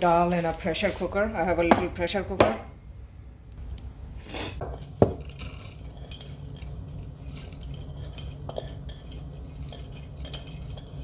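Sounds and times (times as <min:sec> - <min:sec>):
kitchenware clinking and scraping: 0:04.6 - 0:11.0.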